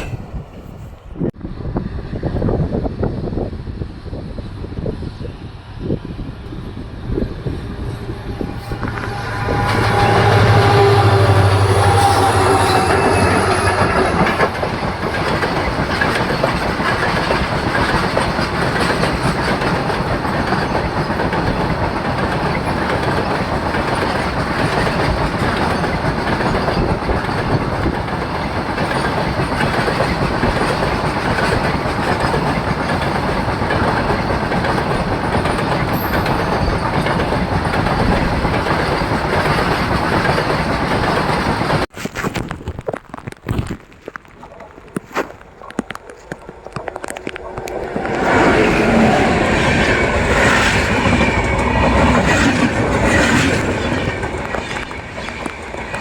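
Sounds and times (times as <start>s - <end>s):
train wheels rumbling on rails: 0.0s - 42.0s, 44.0s - 56.0s
locomotive low hum: 4.4s - 41.9s
clickety-clack over rail joints: 7.4s - 42.3s, 44.0s - 56.0s.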